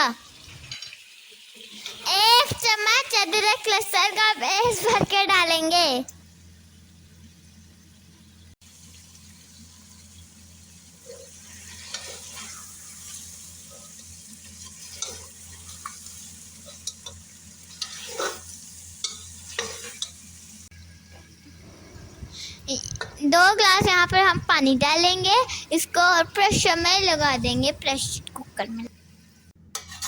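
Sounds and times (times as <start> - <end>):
meat sizzling in ghee: 0.1 - 4.8, 8.6 - 21.5
spoon scraping a pot: 11.0 - 13.2, 14.6 - 20.2, 29.8 - 30.0.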